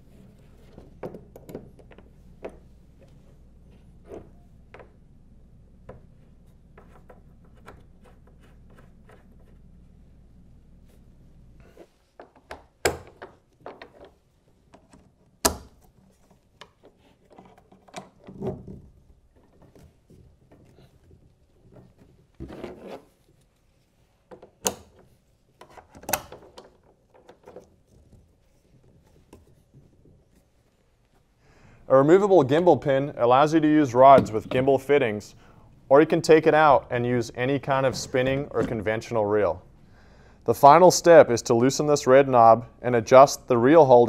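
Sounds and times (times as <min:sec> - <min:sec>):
faint hum: 0:31.4 - 0:43.7.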